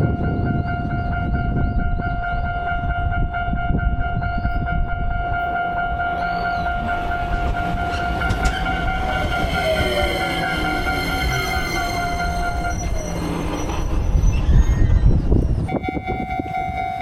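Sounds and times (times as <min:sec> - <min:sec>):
crossing alarm ringing: 0:00.0 - 0:15.0, 0:15.6 - 0:17.0
train rumbling: 0:00.0 - 0:17.0
falling tones: 0:06.1 - 0:16.0.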